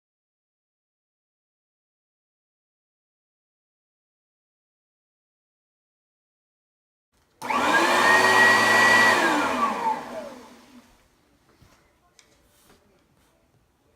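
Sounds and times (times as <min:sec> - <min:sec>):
falling whine of motor: 0:07.4 - 0:10.8
vacuum cleaner motor: 0:07.4 - 0:11.0.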